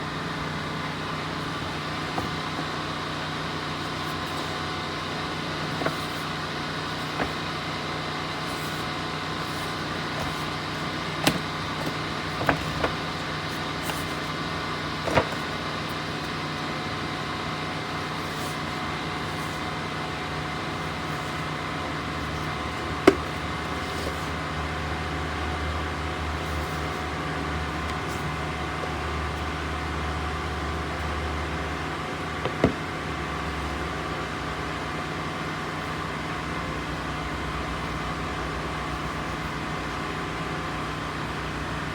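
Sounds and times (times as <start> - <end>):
steady background hum: 0.0 - 41.9
plastic parts clicking and knocking: 15.0 - 15.6, 23.0 - 23.4.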